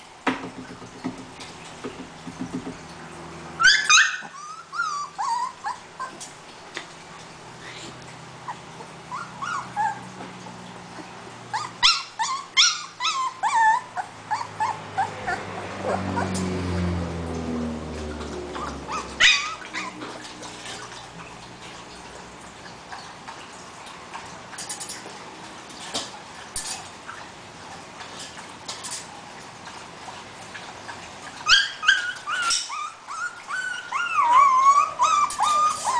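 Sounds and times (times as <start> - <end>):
puppy whining and yipping: 3.6 - 6.4, 8.4 - 10.2, 10.9 - 16.6, 18.3 - 20.9, 31.4 - 35.9.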